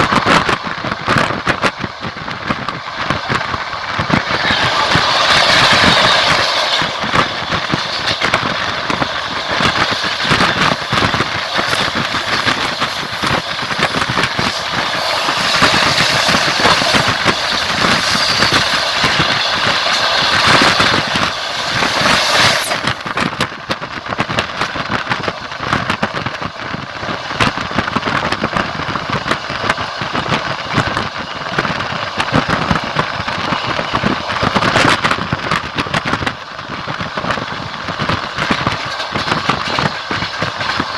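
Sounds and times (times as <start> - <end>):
steady rushing hiss of train: 0.0 - 23.2, 36.9 - 40.9
train wheels clacking over rail joints: 0.0 - 40.9.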